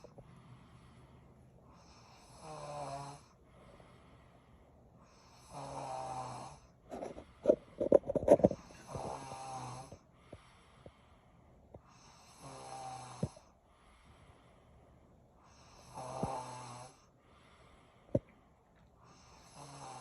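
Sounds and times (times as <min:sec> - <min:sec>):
loud buzzing snores: 0:01.8 - 0:03.4, 0:05.1 - 0:06.7, 0:08.4 - 0:10.0, 0:11.9 - 0:13.4, 0:15.5 - 0:17.1, 0:19.1 - 0:20.0.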